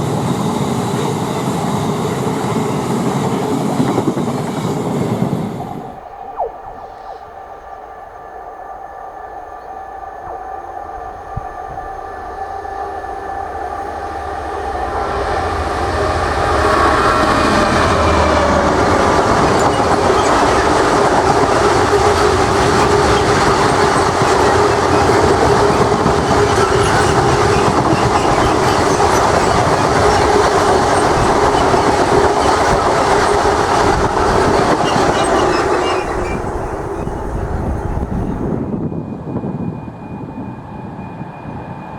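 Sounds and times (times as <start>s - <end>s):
train wagons rumbling and clattering: 0.0s - 6.1s, 9.6s - 41.7s
locomotive horn tones: 10.2s - 38.6s.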